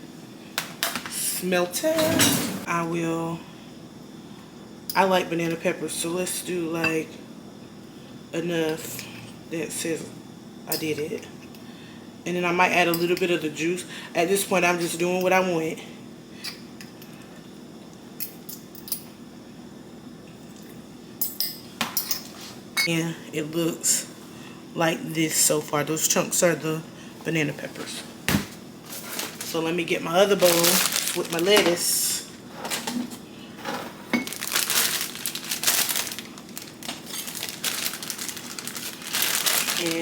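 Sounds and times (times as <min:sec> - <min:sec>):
kitchen utensils clinking: 0:01.8 - 0:02.7, 0:30.4 - 0:32.0, 0:32.6 - 0:40.0
plastic crinkling and rustling: 0:28.8 - 0:31.9, 0:34.2 - 0:40.0.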